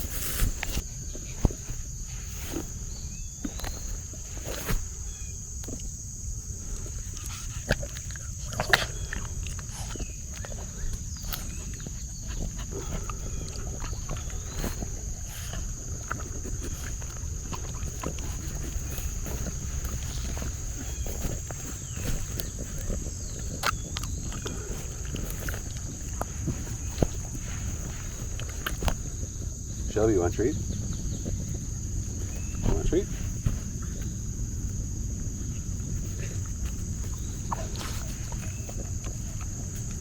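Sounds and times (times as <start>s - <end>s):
footsteps: 11.3s - 34.9s.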